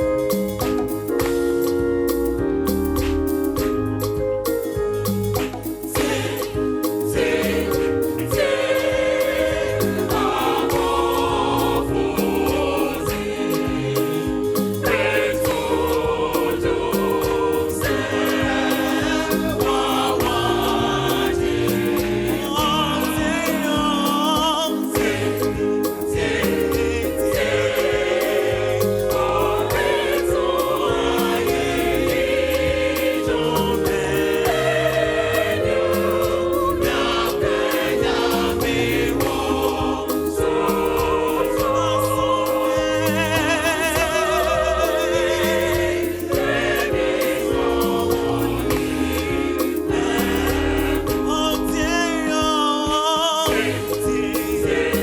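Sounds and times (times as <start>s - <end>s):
bass line: 0.0s - 55.0s
gospel choir singing: 0.0s - 55.0s
percussion beat: 0.0s - 55.0s
high wavering vocal lines: 26.4s - 55.0s.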